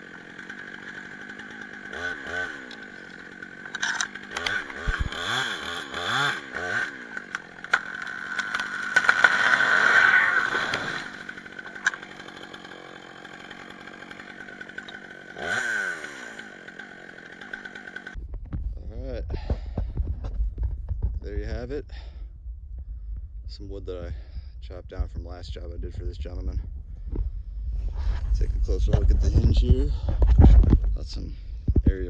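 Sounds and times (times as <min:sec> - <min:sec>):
chainsaw running with revving: 0:00.0 - 0:18.2, 0:28.1 - 0:30.8.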